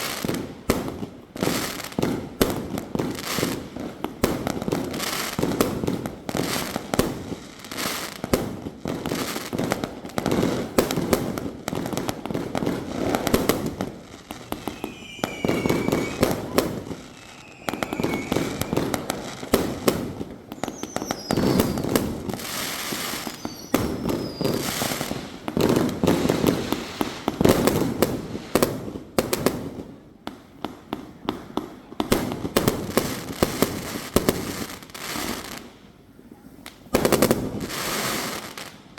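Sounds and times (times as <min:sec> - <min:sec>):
firework cake launches and bursts: 0:00.0 - 0:29.7
falling whistling tones: 0:14.2 - 0:19.6, 0:20.5 - 0:22.0, 0:23.2 - 0:24.7.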